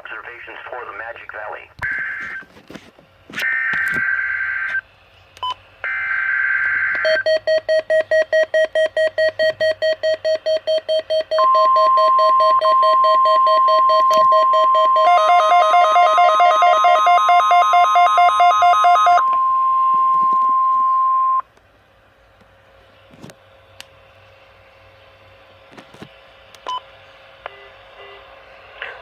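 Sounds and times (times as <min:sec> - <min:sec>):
steady warning alarm tone: 0:01.8 - 0:02.5, 0:03.5 - 0:04.8, 0:05.8 - 0:21.4
weather radio alarm beeps: 0:06.9 - 0:21.4.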